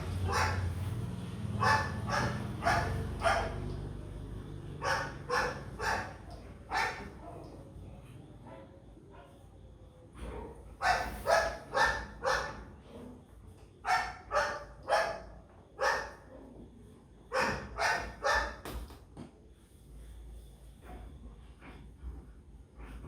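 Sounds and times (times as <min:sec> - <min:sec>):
dog barking: 0:00.0 - 0:04.0, 0:04.6 - 0:07.5, 0:10.3 - 0:12.8, 0:13.8 - 0:16.5, 0:17.3 - 0:18.6.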